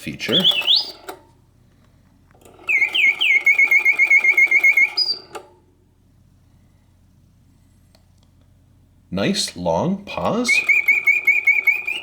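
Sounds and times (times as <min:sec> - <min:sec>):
mechanical bird whistling and trilling: 0:00.3 - 0:01.1, 0:02.6 - 0:05.4, 0:10.5 - 0:12.0.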